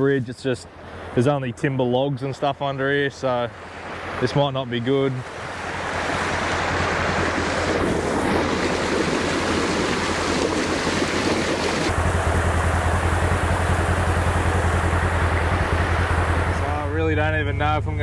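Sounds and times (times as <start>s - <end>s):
floodwater rushing: 0.0s - 18.0s
low rumble: 7.2s - 18.0s.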